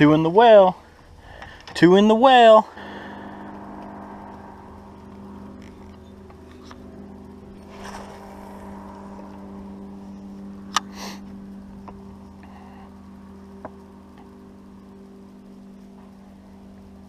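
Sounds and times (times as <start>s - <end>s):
small electric motor humming: 2.7s - 17.0s
soft rustle: 7.5s - 9.6s.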